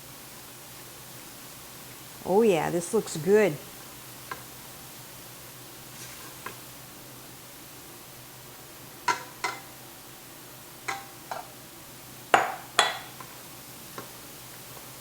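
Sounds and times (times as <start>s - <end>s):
utensil knocking mixing bowl: 12.3s - 13.2s.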